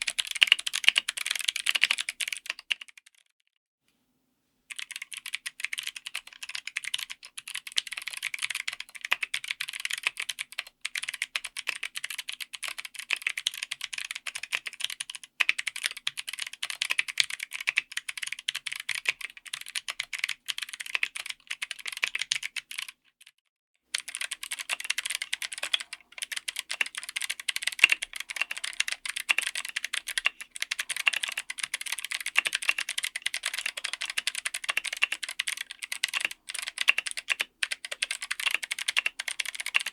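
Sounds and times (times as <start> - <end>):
mechanical keyboard typing: 0.0 - 3.3, 4.7 - 23.0, 23.9 - 39.9.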